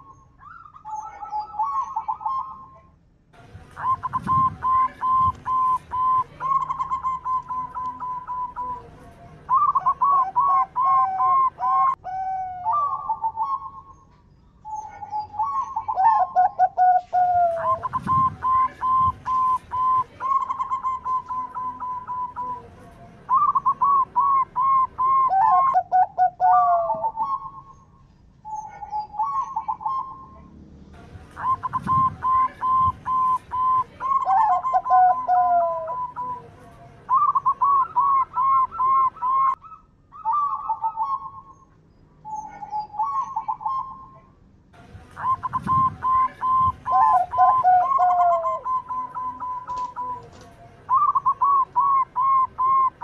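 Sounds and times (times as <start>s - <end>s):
doves cooing: 0.0s - 2.9s, 3.8s - 14.0s, 14.6s - 22.7s, 23.3s - 30.4s, 31.2s - 36.5s, 37.1s - 41.6s, 42.2s - 44.2s, 45.2s - 53.0s.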